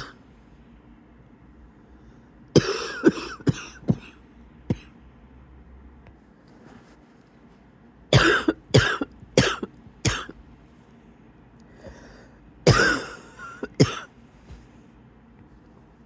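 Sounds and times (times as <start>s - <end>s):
person coughing wheezily: 0.0s - 0.2s, 2.6s - 5.0s, 8.1s - 10.4s, 12.7s - 14.1s
faint breath in: 11.7s - 12.4s.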